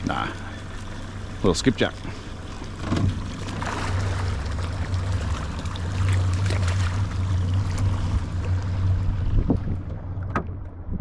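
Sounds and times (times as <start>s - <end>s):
boat motor humming: 0.0s - 11.0s
water noise: 0.0s - 11.0s
wind noise: 8.9s - 11.0s.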